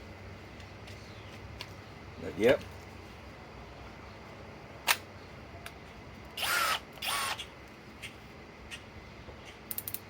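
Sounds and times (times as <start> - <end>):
power drill whirring: 6.4 - 7.4.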